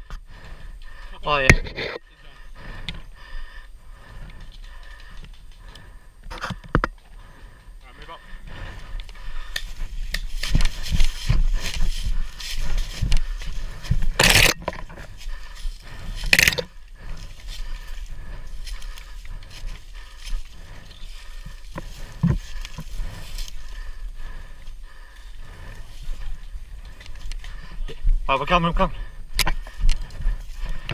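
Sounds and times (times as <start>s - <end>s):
rustling through brush and grass: 7.2s - 28.3s, 29.0s - 30.9s.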